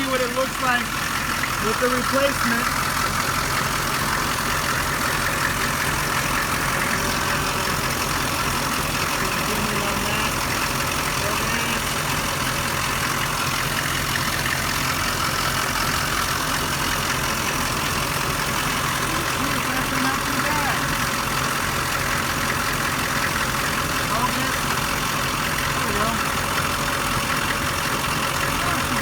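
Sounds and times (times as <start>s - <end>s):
engine-like hum: 0.0s - 29.0s
low drone: 5.8s - 12.0s.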